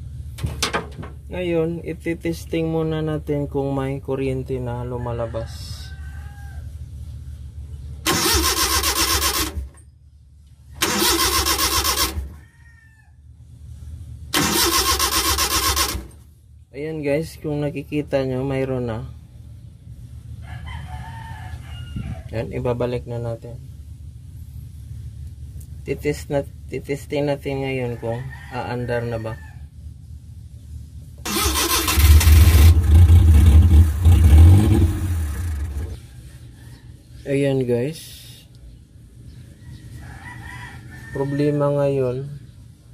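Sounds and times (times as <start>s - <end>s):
starter cranking engine: 8.0s - 9.8s, 10.8s - 12.4s, 14.3s - 16.2s, 31.2s - 36.0s.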